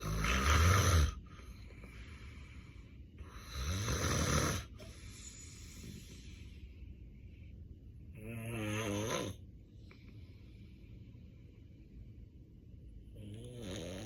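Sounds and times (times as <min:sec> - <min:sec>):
man snoring loudly: 0:00.0 - 0:01.2, 0:03.3 - 0:04.7, 0:08.2 - 0:09.4, 0:13.2 - 0:14.0
quiet breathing: 0:01.1 - 0:03.8, 0:04.5 - 0:08.2, 0:09.3 - 0:14.0.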